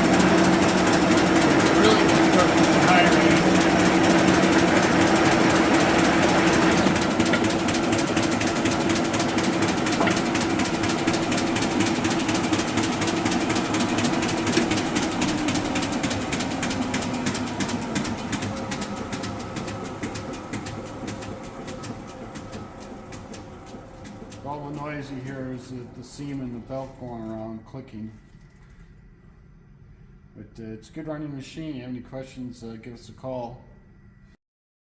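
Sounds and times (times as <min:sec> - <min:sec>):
drive belt rapid clicking: 0:00.0 - 0:27.0
grinder hum: 0:00.0 - 0:27.6.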